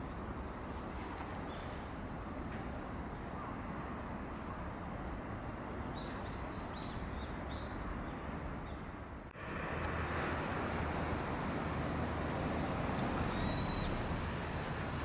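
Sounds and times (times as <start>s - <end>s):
small bird chirping: 13.3s - 14.0s.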